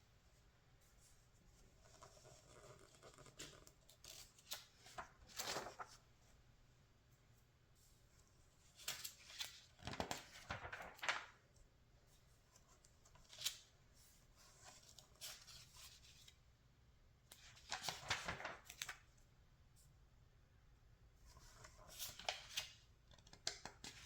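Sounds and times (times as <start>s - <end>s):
magazine pages rustling: 4.0s - 6.1s, 8.8s - 11.4s, 17.3s - 19.0s.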